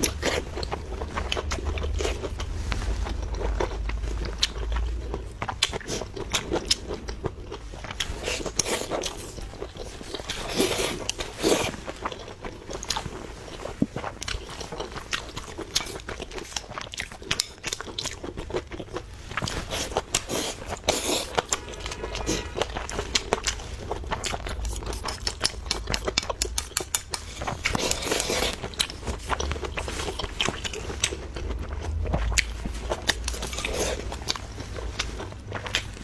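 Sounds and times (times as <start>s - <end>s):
crunchy chewing of food: 0.0s - 36.0s.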